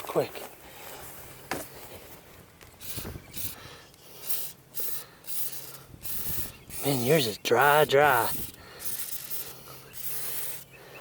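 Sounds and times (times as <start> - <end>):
aerosol spray hissing: 2.8 - 7.4, 8.2 - 10.7.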